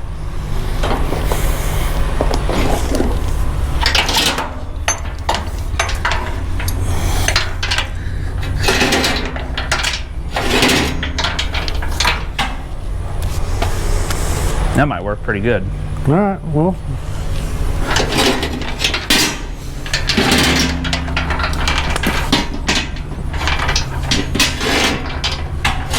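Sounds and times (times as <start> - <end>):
loader engine running: 0.0 - 25.9
chain clanking against metal: 2.6 - 12.8, 17.3 - 25.9.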